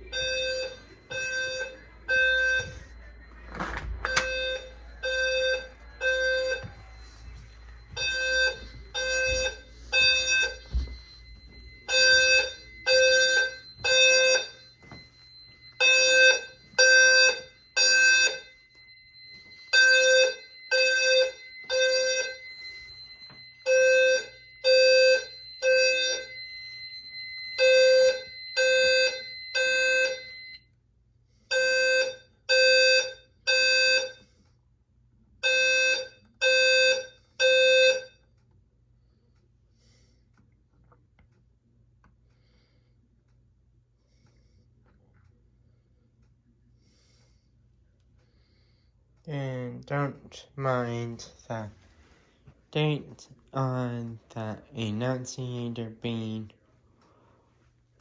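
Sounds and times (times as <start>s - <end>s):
fire alarm blasts: 0.0s - 30.8s, 31.4s - 34.4s, 35.4s - 38.3s, 49.3s - 52.1s, 52.7s - 57.4s.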